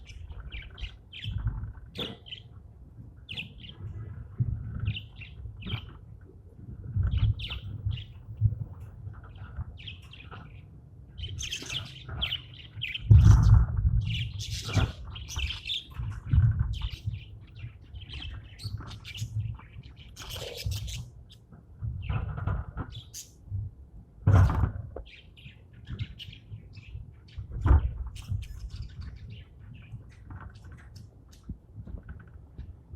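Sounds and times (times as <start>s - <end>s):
budgies chirping: 0.0s - 2.5s, 9.3s - 21.4s, 22.0s - 23.4s.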